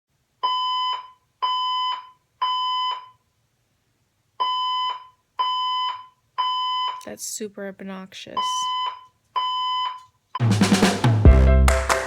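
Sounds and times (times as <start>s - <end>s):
fire alarm beeps: 0.4s - 3.2s, 4.4s - 7.0s, 8.4s - 10.1s.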